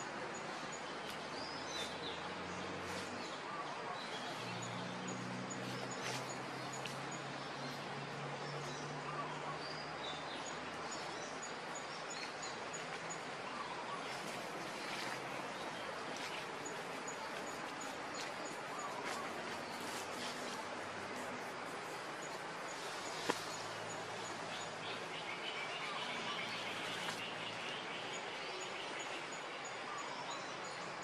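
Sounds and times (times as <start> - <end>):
background hiss: 0.0 - 31.0.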